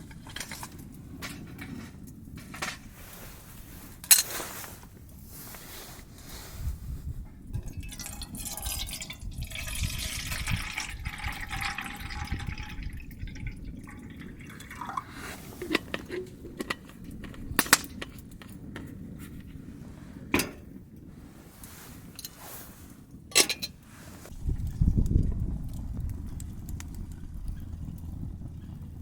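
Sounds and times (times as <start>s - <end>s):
liquid pouring into cup: 7.6s - 17.6s.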